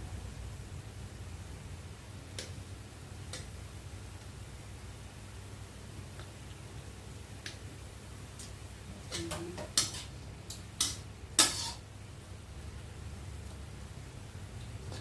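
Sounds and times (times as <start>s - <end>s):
metal utensil scraping a pan: 9.1s - 10.1s, 10.8s - 11.8s.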